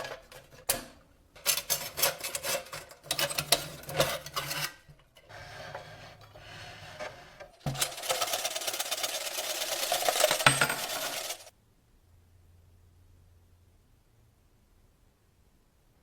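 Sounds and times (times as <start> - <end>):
metallic clinking and rattling: 7.7 - 11.5.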